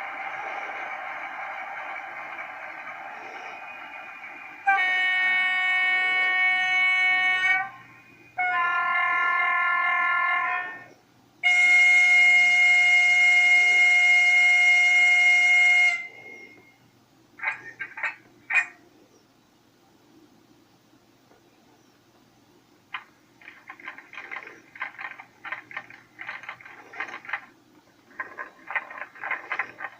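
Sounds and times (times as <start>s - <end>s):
diesel locomotive horn blasts: 4.6s - 10.8s, 11.4s - 16.8s.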